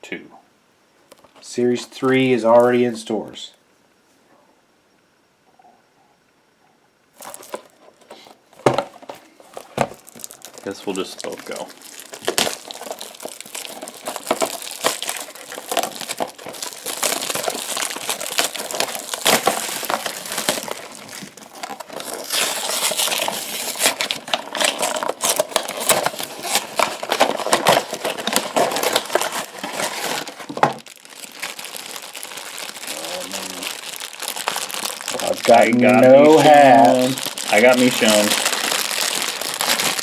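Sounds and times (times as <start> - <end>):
plastic bags crinkling: 7.2 - 40.0
cardboard boxes tearing: 8.6 - 40.0.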